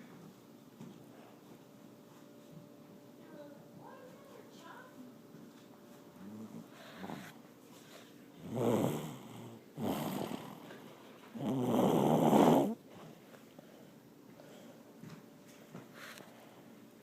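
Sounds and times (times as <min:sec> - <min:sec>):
loud snoring: 0:08.4 - 0:10.7, 0:11.4 - 0:12.8.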